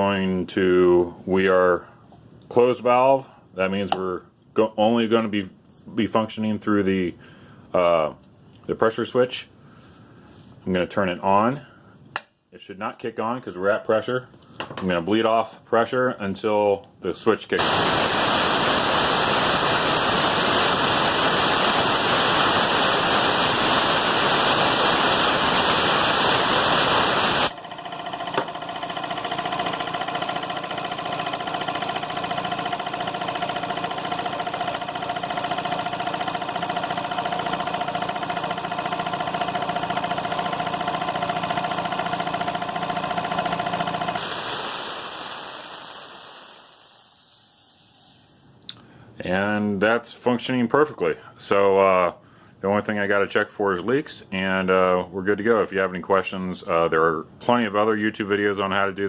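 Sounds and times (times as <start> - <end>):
compressed air hissing: 17.6 - 27.6, 44.2 - 48.4
air compressor motor running: 17.6 - 48.5
unloader valve hiss: 44.2 - 48.5.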